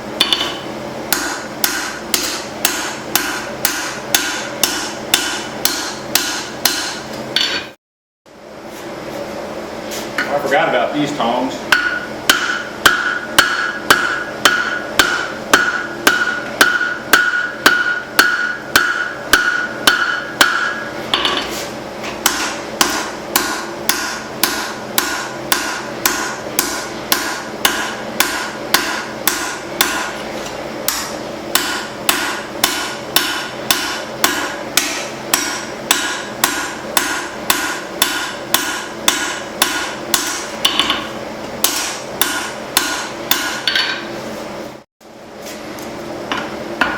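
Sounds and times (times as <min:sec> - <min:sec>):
hammer striking steel on anvil: 0:00.2 - 0:07.8, 0:11.7 - 0:21.5, 0:22.2 - 0:30.2, 0:30.8 - 0:44.1
anvil ringing: 0:11.7 - 0:21.4, 0:22.2 - 0:30.1, 0:30.9 - 0:44.0.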